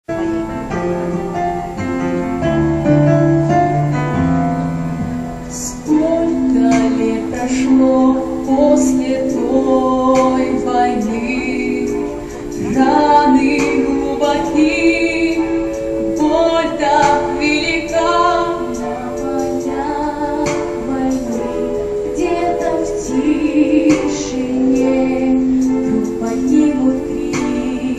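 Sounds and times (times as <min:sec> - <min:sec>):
instrumental accompaniment: 0:00.1 - 0:27.9
female vocal ensemble singing: 0:05.5 - 0:27.9.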